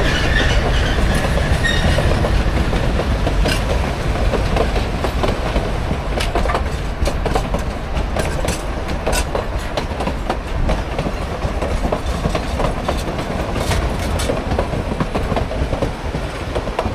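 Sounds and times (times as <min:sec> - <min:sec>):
train rolling past: 0:00.0 - 0:16.9
wheels clanking over rail: 0:00.0 - 0:16.9.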